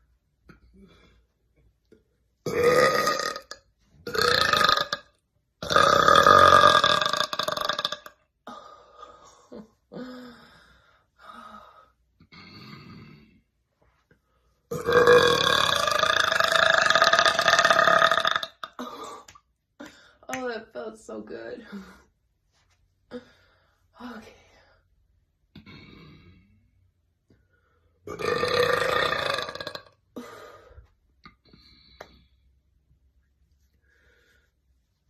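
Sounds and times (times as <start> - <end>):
girl burping: 2.4 - 8.2, 14.7 - 19.3, 28.1 - 30.3.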